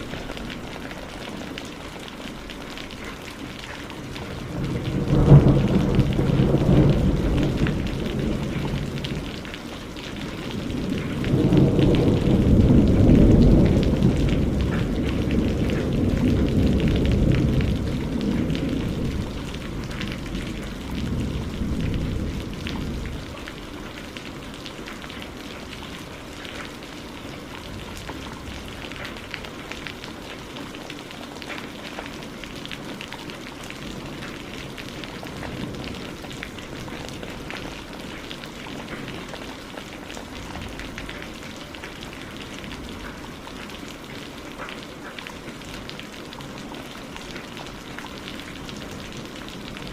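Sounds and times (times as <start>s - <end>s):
steady rain falling: 0.0s - 49.9s
rolling thunder: 4.2s - 9.5s, 10.1s - 23.6s.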